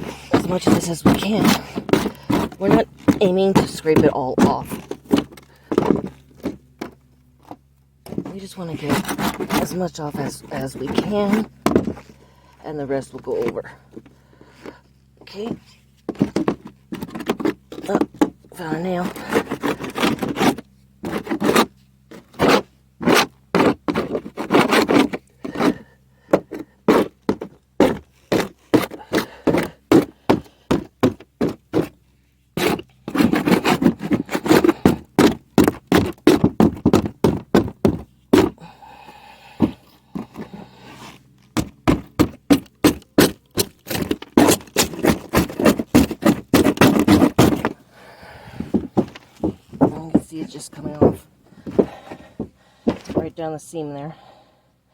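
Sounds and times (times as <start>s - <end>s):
scraper scraping metal roof: 0.0s - 53.5s.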